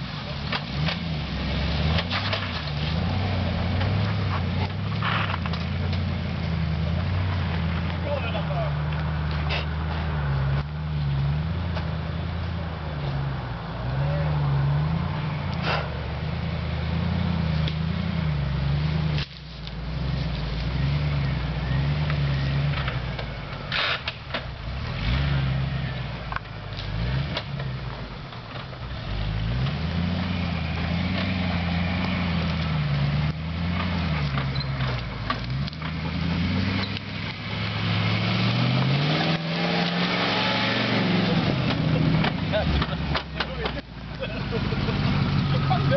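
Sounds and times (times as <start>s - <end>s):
vehicle engine revving: 0.0s - 45.9s
sharp knocks and clunks: 41.6s - 43.8s.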